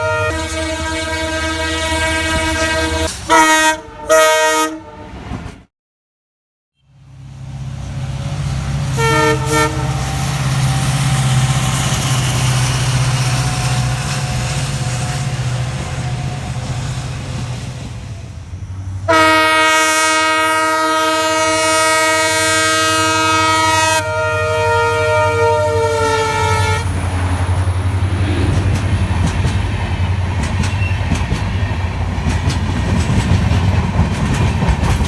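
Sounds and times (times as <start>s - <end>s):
locomotive horn: 0.0s - 5.4s, 8.9s - 10.4s, 19.0s - 27.9s
train rumbling: 0.0s - 5.7s, 7.0s - 35.0s.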